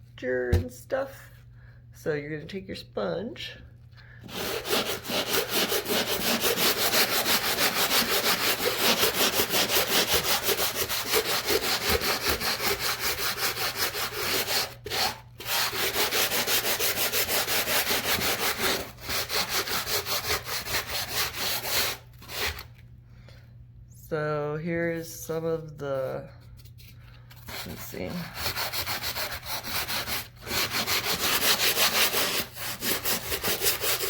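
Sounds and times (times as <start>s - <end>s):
sanding sponge scraping drywall: 4.3s - 22.7s, 27.5s - 34.0s.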